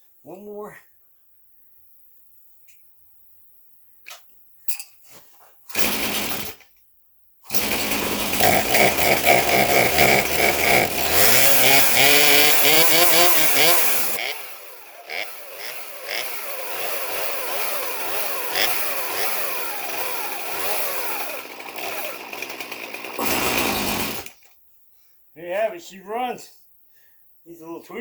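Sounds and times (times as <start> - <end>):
chainsaw engine revving and idling: 5.7 - 6.6, 7.5 - 24.4.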